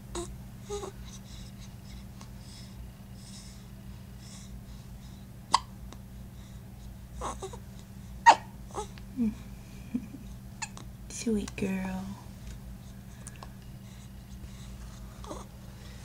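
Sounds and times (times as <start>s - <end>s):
newborn baby hiccuping: 5.5s - 5.7s, 8.2s - 8.9s, 10.6s - 10.9s.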